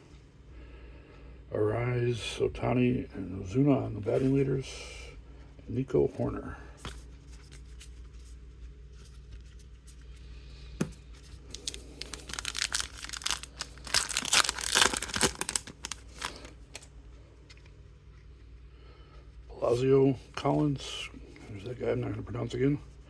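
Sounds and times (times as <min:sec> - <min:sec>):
card pack wrapper tearing and crinkling: 0:11.4 - 0:16.9.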